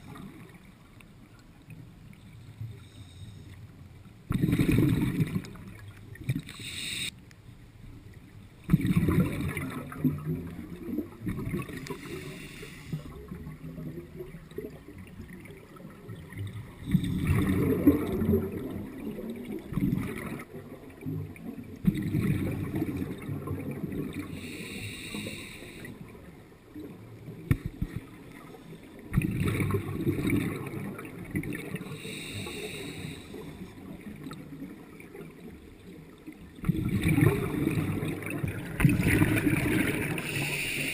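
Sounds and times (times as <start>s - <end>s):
regulator inhale hiss: 2.7s - 3.6s, 6.5s - 7.2s, 11.8s - 13.2s, 24.3s - 26.1s, 31.8s - 33.7s, 40.1s - 40.9s
exhaled bubbles gurgling: 4.2s - 7.1s, 8.6s - 40.9s.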